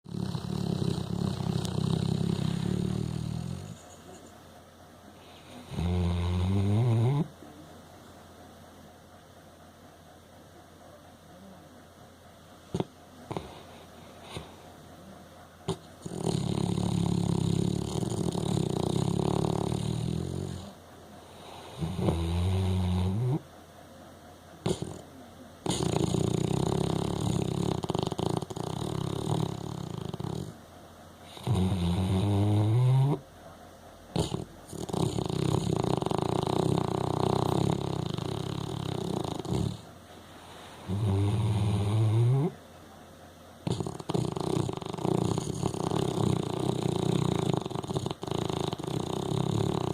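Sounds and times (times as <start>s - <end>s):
dog snoring loudly: 0.0s - 4.2s, 5.2s - 7.3s, 12.7s - 14.6s, 15.7s - 23.5s, 24.6s - 30.6s, 31.2s - 33.2s, 34.1s - 42.6s, 43.6s - 49.9s.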